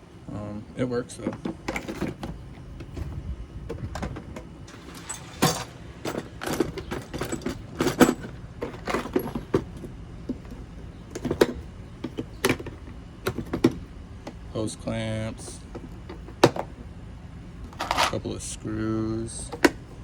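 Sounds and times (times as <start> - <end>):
metal tools clinking and rattling: 1.2 - 14.4, 17.7 - 18.4.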